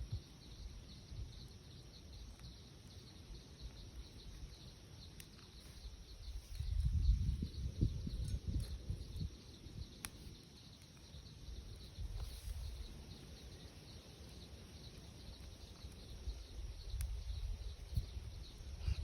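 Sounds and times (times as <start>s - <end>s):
insects chirping: 0.0s - 19.0s.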